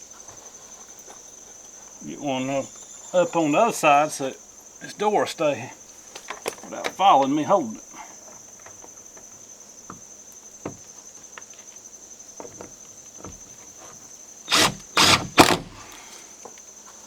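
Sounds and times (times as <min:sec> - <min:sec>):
high insect trill: 0:00.0 - 0:17.0
power drill driving a screw: 0:14.5 - 0:16.0.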